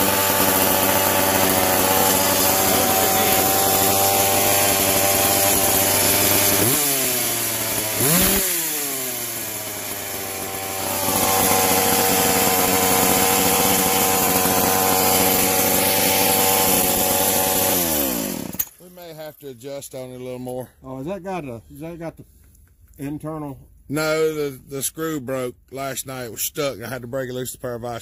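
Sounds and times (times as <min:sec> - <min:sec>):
chainsaw engine idling and revving: 0:00.0 - 0:19.1
man speaking: 0:02.5 - 0:03.7, 0:18.8 - 0:22.2, 0:23.0 - 0:28.0.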